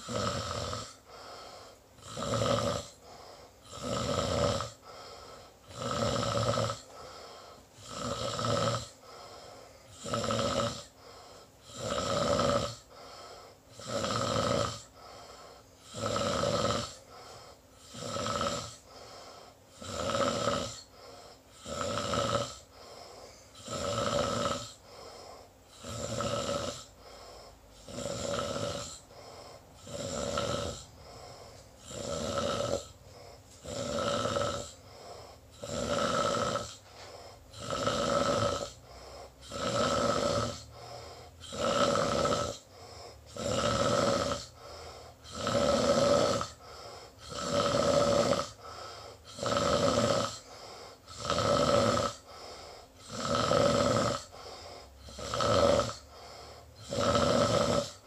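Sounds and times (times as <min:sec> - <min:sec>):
person snoring: 0:00.0 - 0:58.0
soft breathing: 0:00.8 - 0:02.0, 0:02.9 - 0:03.9, 0:04.7 - 0:05.8, 0:06.8 - 0:08.1, 0:08.9 - 0:10.2, 0:10.8 - 0:11.8, 0:12.8 - 0:13.8, 0:14.8 - 0:16.0, 0:16.9 - 0:19.8, 0:20.7 - 0:21.8, 0:22.6 - 0:23.8, 0:24.6 - 0:26.0, 0:26.8 - 0:49.5, 0:50.1 - 0:51.3, 0:52.0 - 0:53.3, 0:54.2 - 0:55.3, 0:55.9 - 0:56.9.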